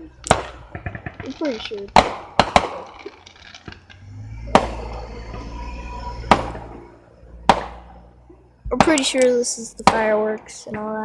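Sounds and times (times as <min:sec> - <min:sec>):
low rumble: 0:00.0 - 0:11.0
fireworks bangs: 0:00.1 - 0:08.0.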